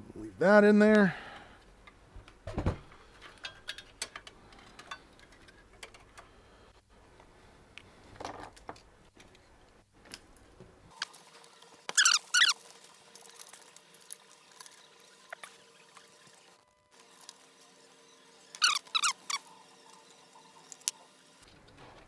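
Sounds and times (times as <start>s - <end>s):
short squeaks: 11.9s - 12.6s, 18.6s - 19.6s.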